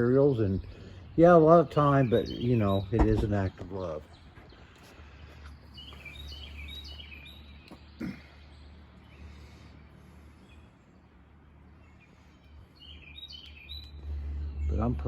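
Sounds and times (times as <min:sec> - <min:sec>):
steady low hum: 0:00.0 - 0:06.9, 0:07.6 - 0:15.0
bird chirping: 0:00.0 - 0:15.0
brief knock: 0:03.0 - 0:03.3.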